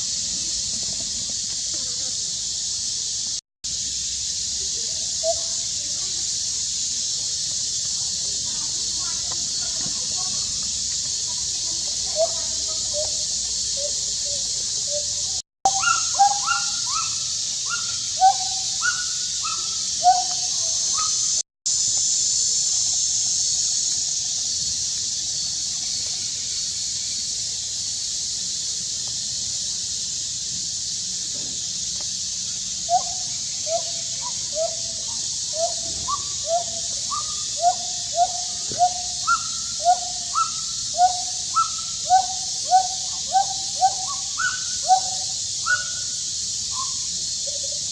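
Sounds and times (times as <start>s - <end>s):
steady high hiss: 0.0s - 47.9s
monkey crying calls: 15.7s - 21.2s, 32.9s - 47.9s.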